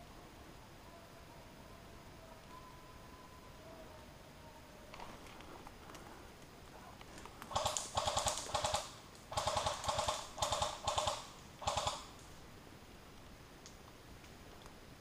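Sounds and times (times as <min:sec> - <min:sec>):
airsoft rifle rapid clicking: 0:07.4 - 0:12.3.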